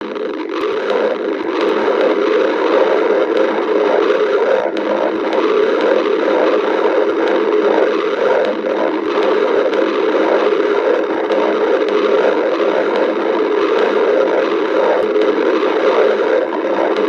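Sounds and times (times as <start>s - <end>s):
stomach growling: 0.0s - 17.0s.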